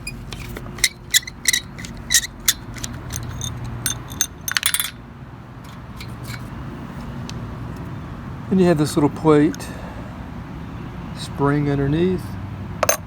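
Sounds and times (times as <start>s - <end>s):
metal parts and tool clinking: 0.0s - 5.0s, 5.6s - 6.5s
short rattle: 0.0s - 5.0s.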